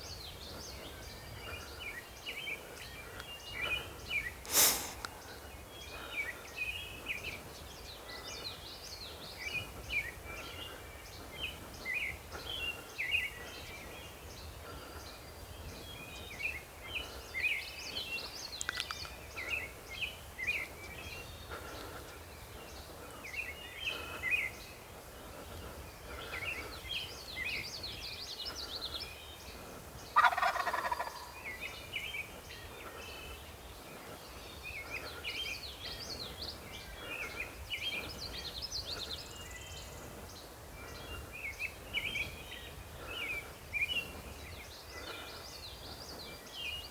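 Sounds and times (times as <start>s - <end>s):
songbirds chirping and singing: 0.0s - 46.9s
turkey gobbling: 30.2s - 31.4s.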